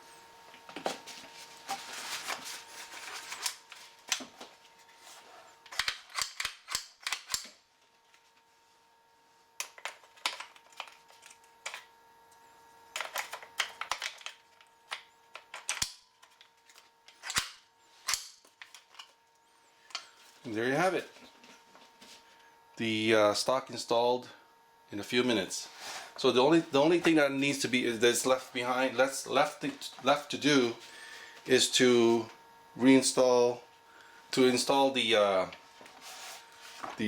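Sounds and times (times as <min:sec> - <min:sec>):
faint steady hum: 0:00.0 - 0:37.0
clicks and knocks of rifle handling: 0:13.0 - 0:19.2.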